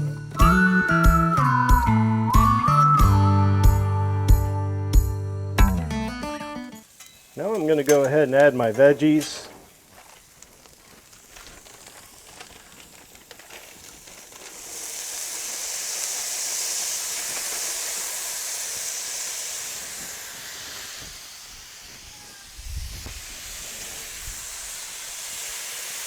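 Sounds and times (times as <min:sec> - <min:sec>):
vegetables sizzling on griddle: 0:06.6 - 0:26.0.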